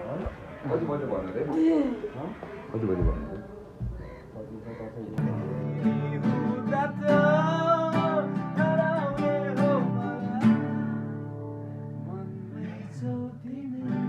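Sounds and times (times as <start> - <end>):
person singing: 5.2 - 11.1
strummed acoustic guitar: 5.2 - 14.0.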